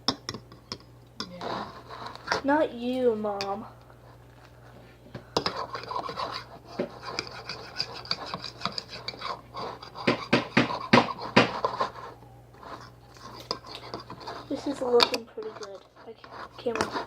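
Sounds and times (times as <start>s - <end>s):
fork scraping in a bowl: 1.2s - 2.4s, 5.4s - 17.0s.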